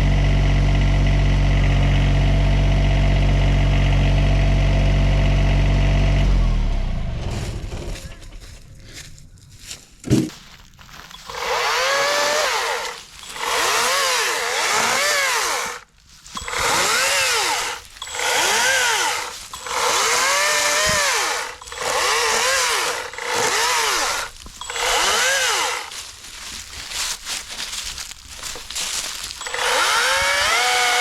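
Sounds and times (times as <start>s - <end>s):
chainsaw cutting wood: 10.9s - 31.0s.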